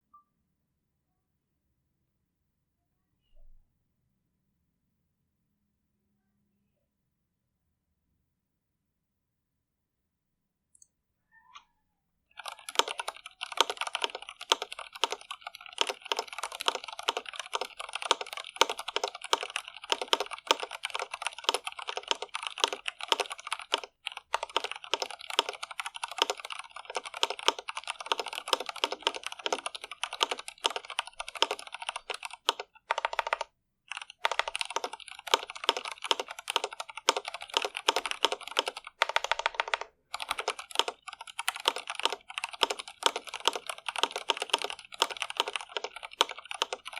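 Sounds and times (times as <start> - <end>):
mechanical keyboard typing: 12.4 - 46.9.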